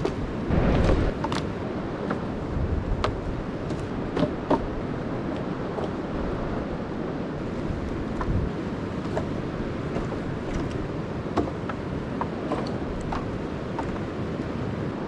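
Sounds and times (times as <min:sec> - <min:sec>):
low rushing noise: 0:00.3 - 0:04.1.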